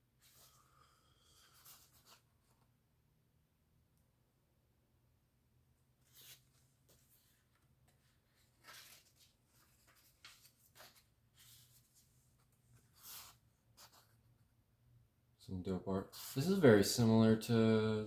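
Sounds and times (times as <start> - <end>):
paper pages rustling: 6.0 - 14.2.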